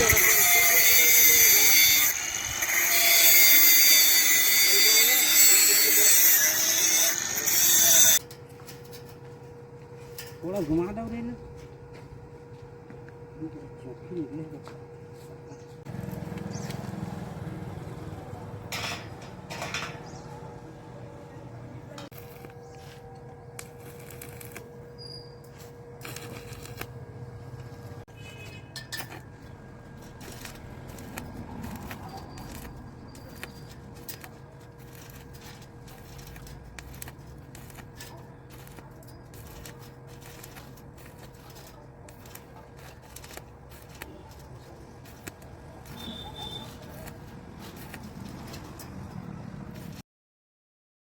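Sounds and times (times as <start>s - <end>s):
welding arc crackling: 0.0s - 8.2s, 22.1s - 22.6s, 23.6s - 24.9s, 25.6s - 48.8s.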